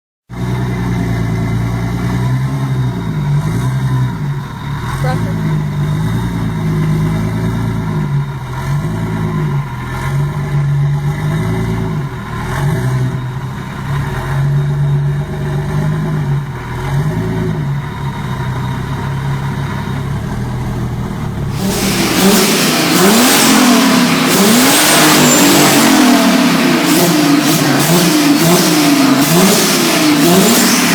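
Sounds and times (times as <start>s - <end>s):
engine revving: 0.3s - 30.9s
hissing engine revs: 0.3s - 30.9s.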